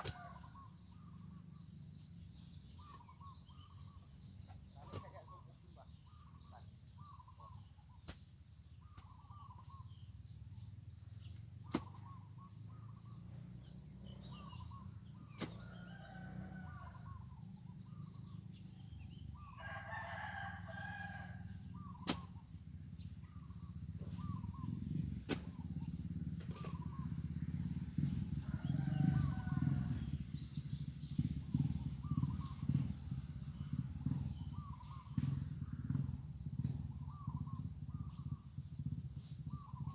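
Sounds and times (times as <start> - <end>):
small bird chirps: 2.4 - 16.3, 39.2 - 39.9
rooster crowing: 15.6 - 17.2, 19.5 - 21.6, 28.3 - 30.1.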